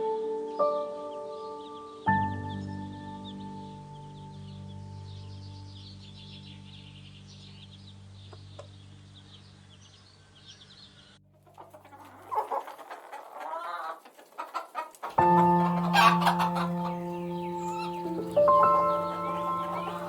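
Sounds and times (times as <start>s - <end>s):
soft sustained music: 0.0s - 10.4s, 15.1s - 20.0s
chickens clucking: 11.4s - 20.0s.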